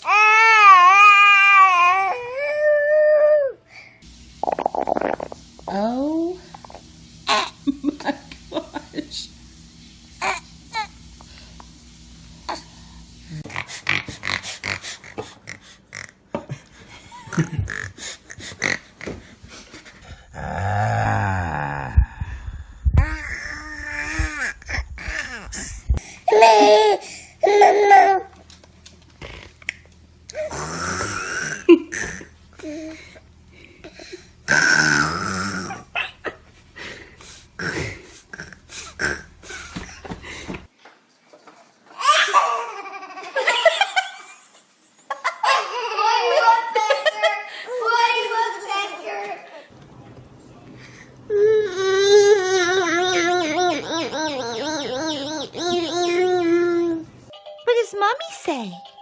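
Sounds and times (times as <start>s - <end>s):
baby making funny noises: 0.0s - 3.6s, 51.7s - 57.0s
baby making raspy burp-like noises: 13.5s - 16.2s, 30.4s - 32.3s, 34.5s - 35.9s, 37.6s - 39.3s.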